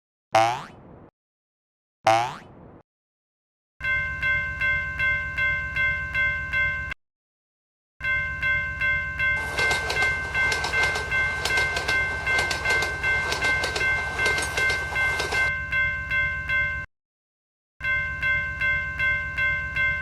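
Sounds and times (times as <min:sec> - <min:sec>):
railroad crossing alarm ringing: 0:03.8 - 0:07.0, 0:08.0 - 0:16.9, 0:17.8 - 0:20.0
train wheels clattering: 0:09.4 - 0:15.5.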